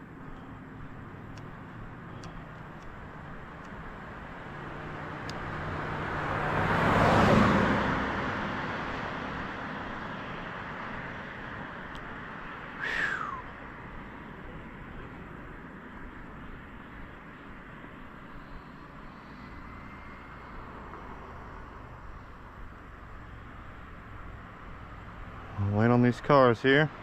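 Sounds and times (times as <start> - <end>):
vehicle passing by: 3.8 - 13.4, 19.2 - 27.0.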